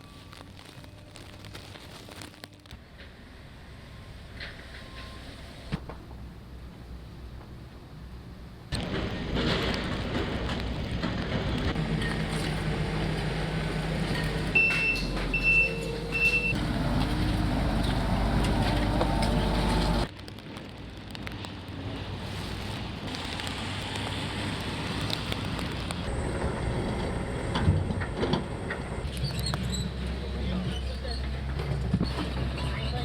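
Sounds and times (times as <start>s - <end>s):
heavy engine running: 8.7s - 20.1s, 22.2s - 33.0s
reversing alarm beeping: 14.5s - 16.6s.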